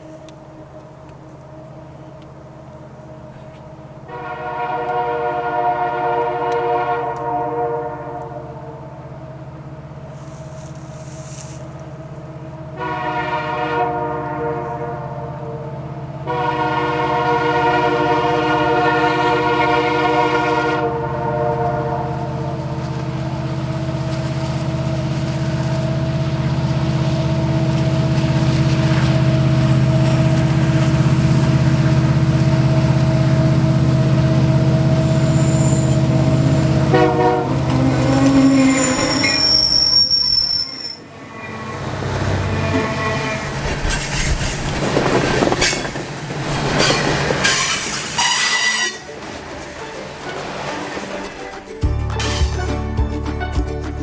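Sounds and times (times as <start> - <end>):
train wheels on rails: 0.0 - 7.4, 8.2 - 14.8, 15.8 - 52.7
locomotive chime horn blasts: 4.0 - 9.1, 12.6 - 24.0, 27.4 - 43.7, 46.8 - 49.3
diesel engines droning: 8.1 - 53.4.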